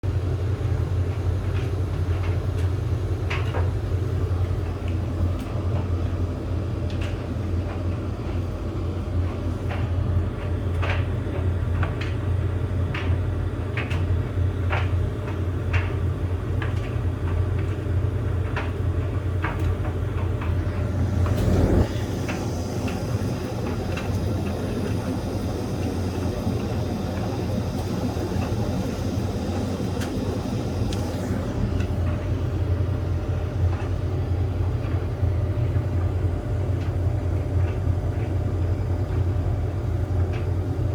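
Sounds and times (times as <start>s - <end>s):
tumble dryer humming: 18.5s - 37.0s.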